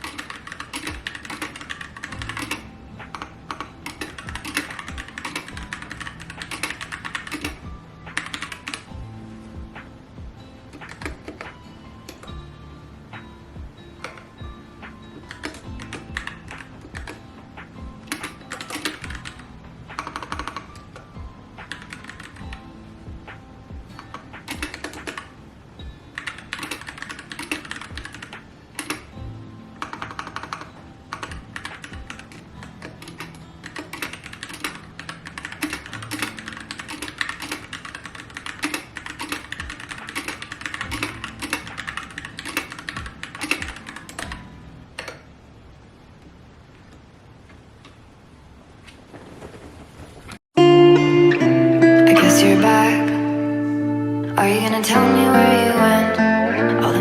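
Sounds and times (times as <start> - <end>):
typing on a keyboard: 0.0 - 8.9, 15.2 - 17.2, 18.0 - 22.6, 24.0 - 25.3, 26.2 - 29.2, 29.8 - 44.4
background music: 0.0 - 45.6, 50.6 - 57.0.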